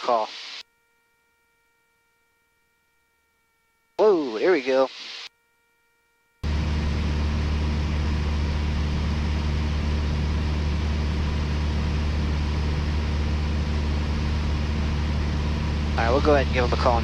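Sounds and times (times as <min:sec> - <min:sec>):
aircraft engine and propeller droning: 0:06.4 - 0:17.0.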